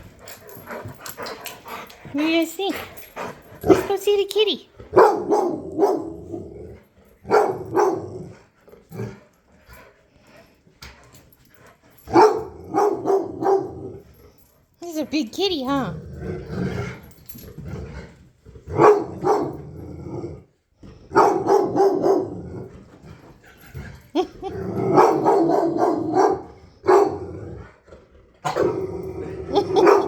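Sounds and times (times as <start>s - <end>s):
dog barking: 4.9s - 6.2s, 7.3s - 8.2s, 12.1s - 13.9s, 18.8s - 19.6s, 21.1s - 22.4s, 24.9s - 27.2s, 29.8s - 30.0s.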